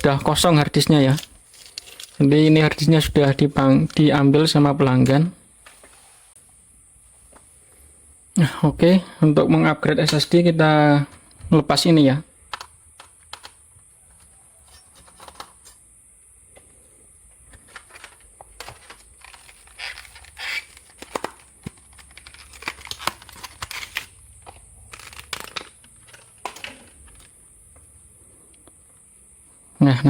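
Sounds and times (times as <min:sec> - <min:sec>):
scraping rustles of parts handled: 0:00.8 - 0:03.4, 0:14.1 - 0:15.8, 0:17.4 - 0:27.4.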